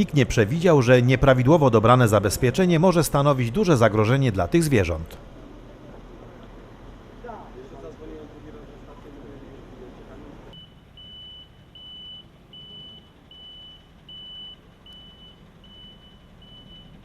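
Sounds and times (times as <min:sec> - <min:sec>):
vehicle warning beeper: 0:10.5 - 0:17.0.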